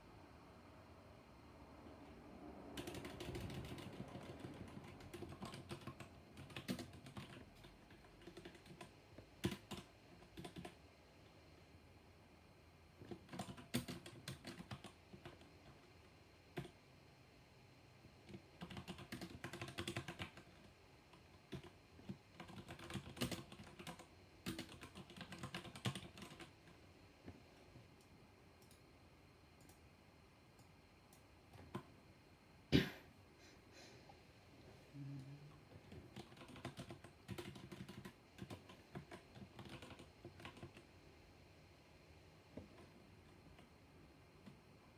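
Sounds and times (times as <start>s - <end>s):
typing on mechanical keyboard: 2.7s - 10.8s, 13.0s - 15.9s, 18.2s - 26.8s, 35.8s - 40.9s.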